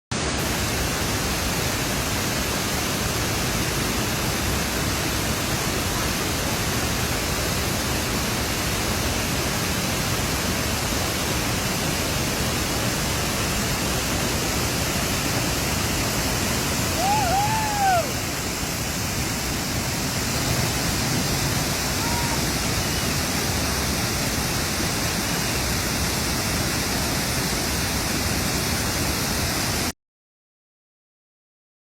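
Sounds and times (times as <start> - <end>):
waterfall roaring: 0.1 - 29.9
high call rising and falling: 16.8 - 18.8.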